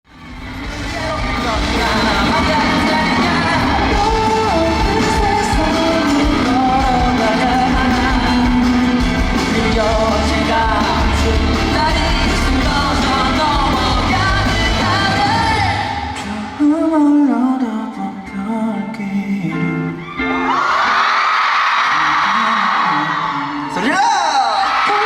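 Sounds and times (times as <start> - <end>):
live rock band playing: 0.1 - 21.1
man singing: 0.4 - 20.1, 21.9 - 25.0.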